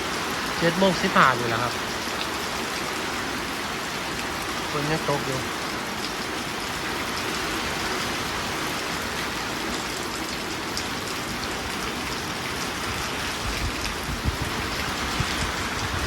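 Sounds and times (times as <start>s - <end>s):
heavy rain falling: 0.0s - 16.0s
low rumbling: 13.4s - 16.0s.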